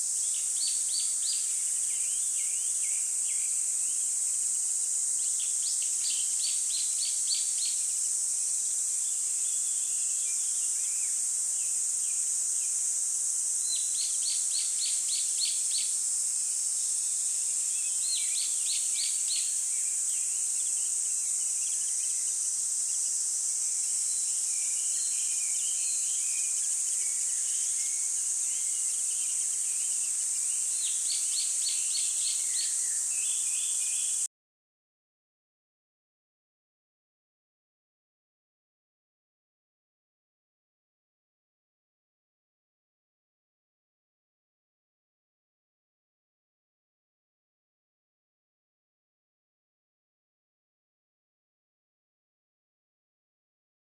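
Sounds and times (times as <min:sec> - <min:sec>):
small birds singing: 0:00.0 - 0:12.9, 0:13.5 - 0:34.3
steady high-pitched hiss: 0:00.0 - 0:34.3.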